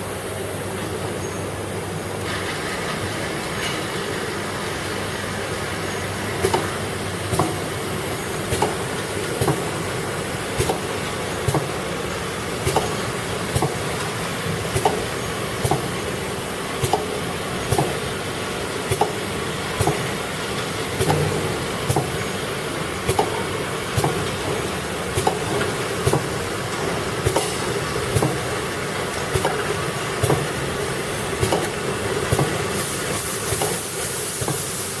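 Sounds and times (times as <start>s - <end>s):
sharp machine click: 27.2s - 28.5s.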